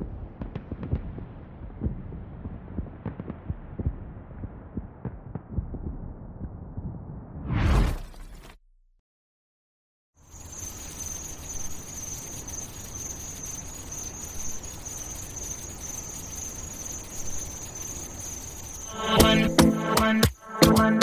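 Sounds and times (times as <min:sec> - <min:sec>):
background hiss: 0:10.2 - 0:21.0
crickets chirping: 0:10.2 - 0:21.0.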